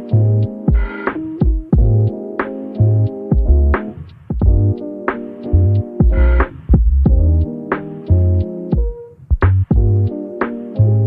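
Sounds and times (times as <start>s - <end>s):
synthesizer chord: 0.0s - 8.8s
heavy bass-drum beat: 0.4s - 2.1s, 3.3s - 4.8s, 5.6s - 7.6s, 8.3s - 10.1s.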